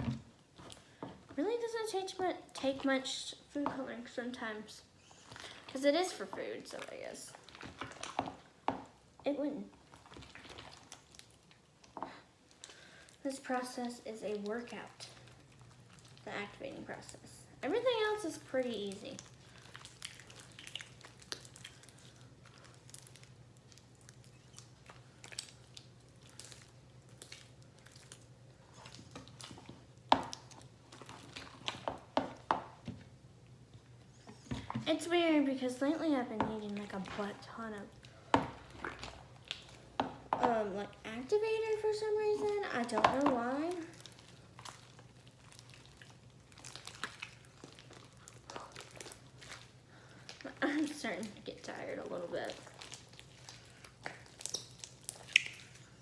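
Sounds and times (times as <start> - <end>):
loud slime squelches: 0.0 - 32.5, 34.1 - 56.0
wet slime squishes: 0.0 - 56.0
slime pop: 53.9 - 55.9.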